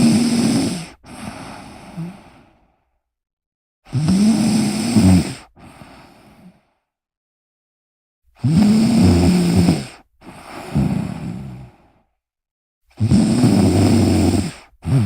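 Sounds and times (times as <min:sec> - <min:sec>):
person snoring: 0:00.0 - 0:02.8, 0:03.9 - 0:06.6, 0:08.4 - 0:12.0, 0:13.0 - 0:15.0.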